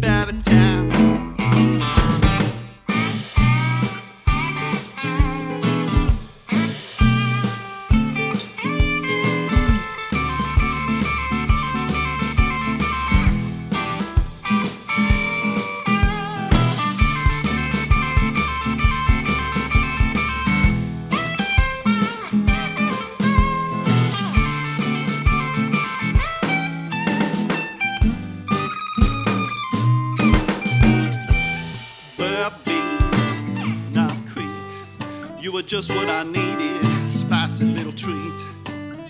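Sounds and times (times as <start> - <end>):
lead guitar bending notes: 0.0 - 6.1, 7.0 - 31.8
steady drum beat: 0.0 - 38.8.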